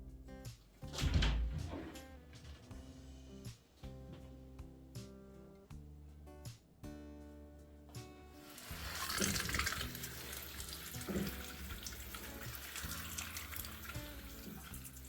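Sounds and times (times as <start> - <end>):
soft guitar music: 0.0 - 15.0
tap water running into sink: 8.4 - 15.0.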